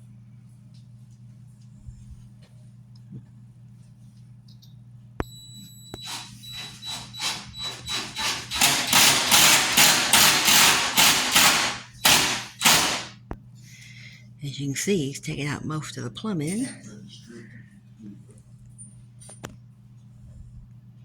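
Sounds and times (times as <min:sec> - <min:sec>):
hand saw cutting: 0:06.6 - 0:13.1.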